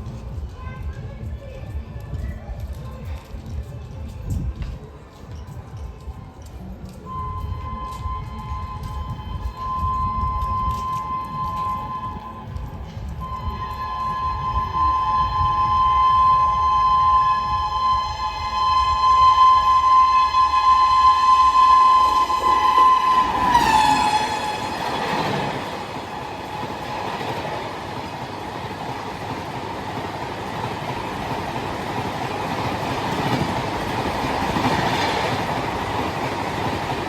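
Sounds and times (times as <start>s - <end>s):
train wheels on rails: 0.0s - 37.0s
locomotive horn blast: 13.2s - 25.7s.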